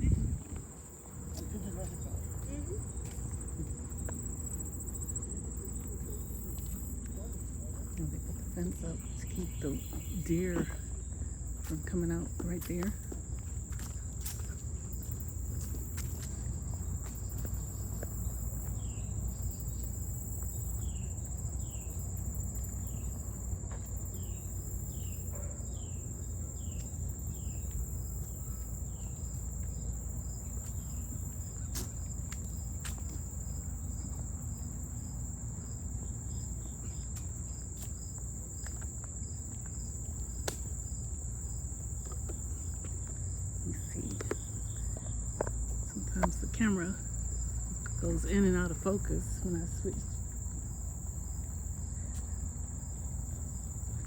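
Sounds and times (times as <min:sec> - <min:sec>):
low steady rumble: 0:00.0 - 0:09.6
insects droning: 0:00.0 - 0:54.0.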